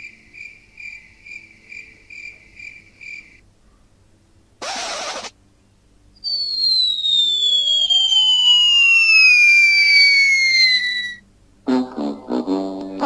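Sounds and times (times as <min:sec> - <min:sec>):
falling whistle sound effect: 0:04.6 - 0:05.3, 0:06.2 - 0:11.2
brief hiss: 0:04.6 - 0:05.4.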